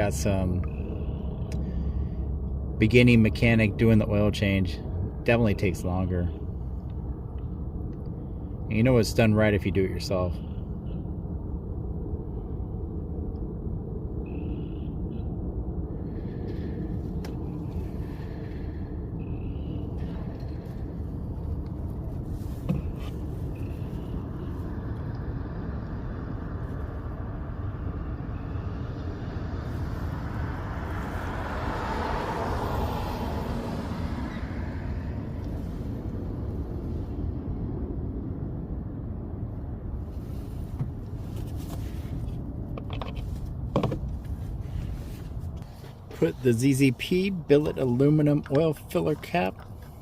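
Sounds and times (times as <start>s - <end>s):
traffic rumble: 0.0s - 50.0s
vehicle passing by: 15.3s - 39.0s.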